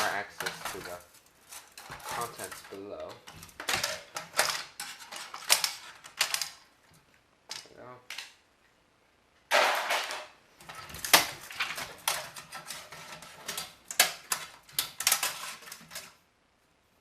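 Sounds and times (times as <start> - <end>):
plastic scraping: 0.0 - 6.7, 9.5 - 16.2
clicks knocks and clatter of parts: 0.0 - 8.4, 9.5 - 16.2.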